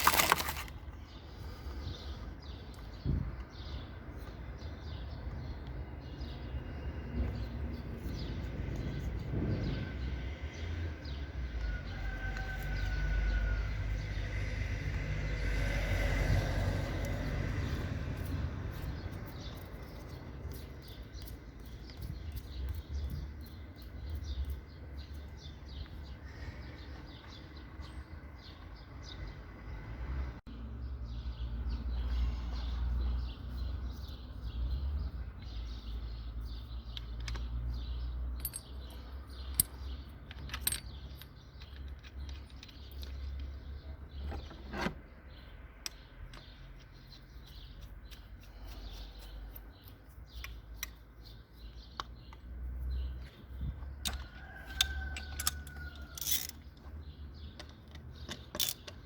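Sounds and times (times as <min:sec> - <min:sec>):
hand tools clinking on metal: 0:38.4 - 0:43.5, 0:54.0 - 0:56.8, 0:57.5 - 0:59.0.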